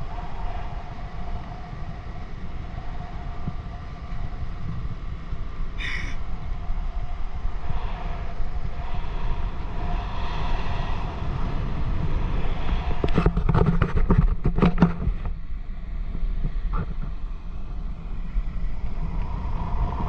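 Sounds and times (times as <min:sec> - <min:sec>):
wind buffeting microphone: 0:00.0 - 0:20.0
knocks and crackles: 0:13.0 - 0:15.4.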